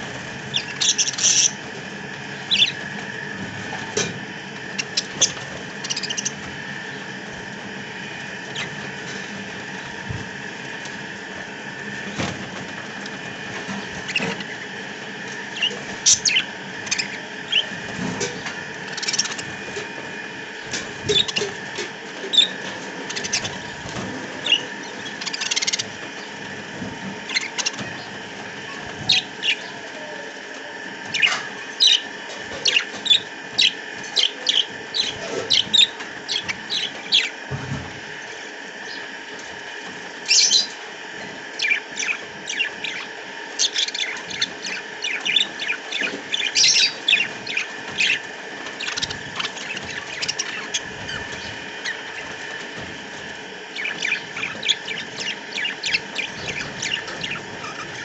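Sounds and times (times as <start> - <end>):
budgerigars chirping: 0.5 - 1.6, 2.5 - 2.8, 4.7 - 6.4, 13.7 - 14.6, 15.5 - 17.8, 18.9 - 19.5, 22.3 - 23.7, 24.4 - 26.4, 29.0 - 29.8, 31.1 - 37.3, 40.3 - 40.8, 41.6 - 48.2, 48.8 - 52.5, 53.7 - 58.0
flock chatter: 4.4 - 37.5, 41.4 - 58.0.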